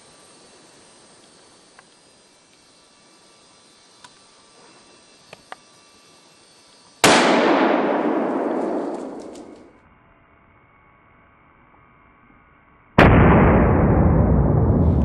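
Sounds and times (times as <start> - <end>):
faint ticks: 1.2 - 2.7, 4.0 - 5.8
rifle shot: 7.0 - 9.7, 13.0 - 15.0.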